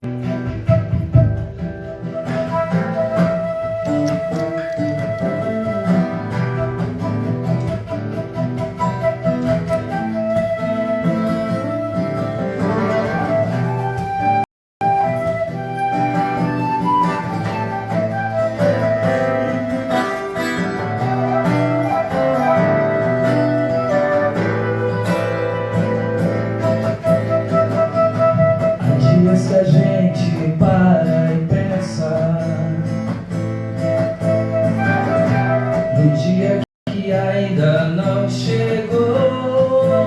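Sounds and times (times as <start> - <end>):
flute melody: 0.0 - 31.0, 33.3 - 36.6, 38.8 - 40.0
guitar: 0.0 - 40.0.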